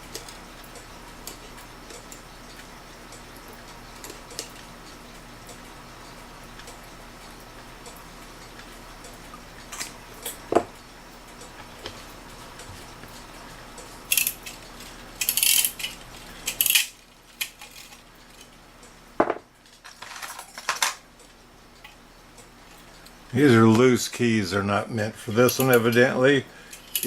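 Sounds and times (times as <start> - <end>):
small metal parts clinking: 14.1 - 18.6, 19.8 - 21.0, 26.7 - 27.0.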